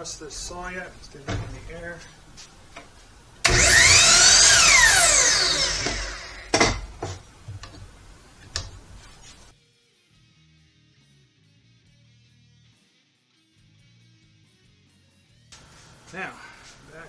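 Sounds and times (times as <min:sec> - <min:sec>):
miter saw motor whining: 0:03.4 - 0:06.9
sharp knocks: 0:05.6 - 0:07.9.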